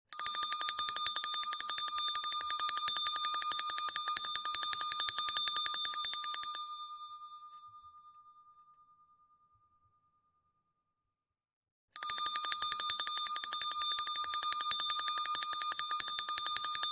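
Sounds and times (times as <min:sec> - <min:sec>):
handbell ringing: 0:00.2 - 0:07.6, 0:12.0 - 0:16.9.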